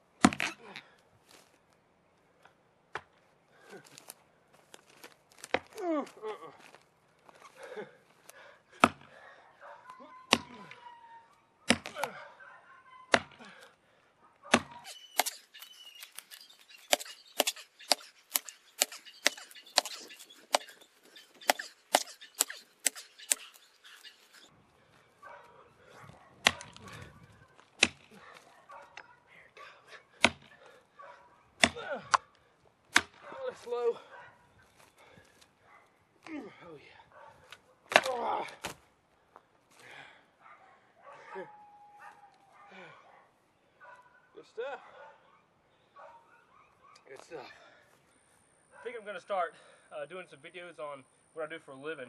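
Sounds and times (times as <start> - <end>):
axe chopping tree trunk: 0.2 - 0.6, 8.8 - 9.2, 10.3 - 10.8, 11.7 - 12.2, 13.1 - 13.6, 14.5 - 20.8, 21.4 - 23.6, 26.4 - 27.0, 27.6 - 28.2, 30.1 - 30.6, 31.6 - 32.2, 32.9 - 33.3, 37.9 - 38.8.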